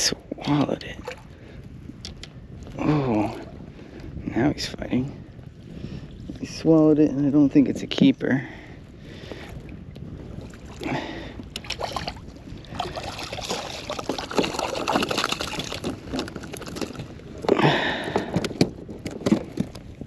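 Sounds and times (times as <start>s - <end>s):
water splashing against kayak: 9.0s - 20.0s.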